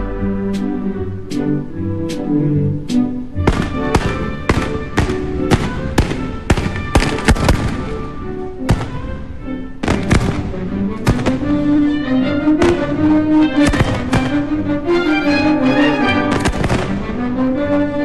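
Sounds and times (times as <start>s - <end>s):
music with held notes: 0.0s - 18.0s
fireworks bangs: 3.4s - 14.6s, 16.2s - 17.2s.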